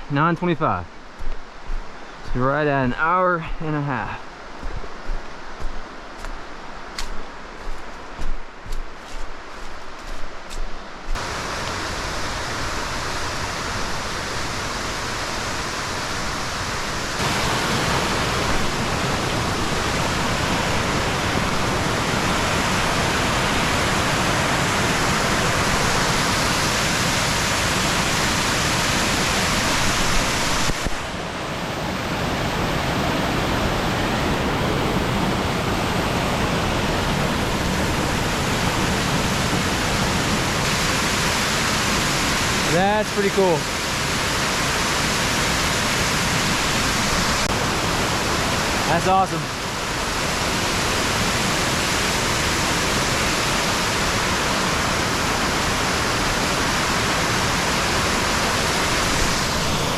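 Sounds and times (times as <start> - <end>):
waterfall rushing: 11.2 - 59.9.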